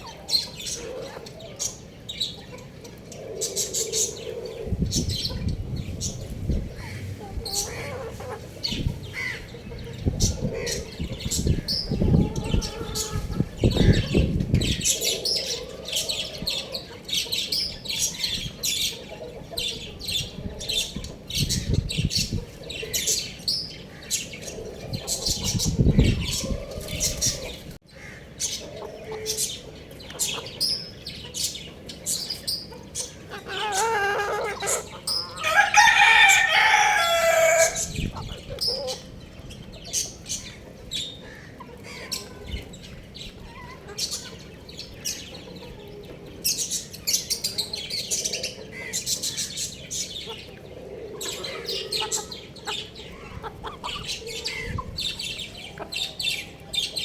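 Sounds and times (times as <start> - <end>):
chicks chirping: 0.0 - 27.8, 28.4 - 57.0
young rooster crowing: 33.5 - 38.0.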